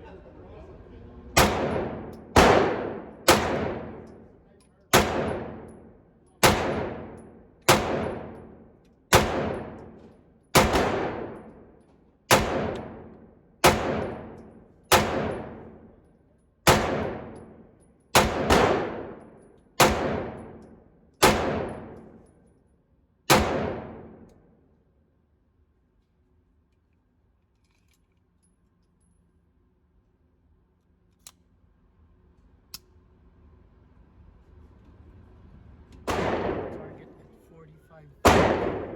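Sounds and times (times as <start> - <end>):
pistol shots: 1.4 - 4.3, 4.9 - 11.7, 12.3 - 15.9, 16.6 - 22.2, 23.3 - 24.4, 36.0 - 37.2, 38.2 - 38.9.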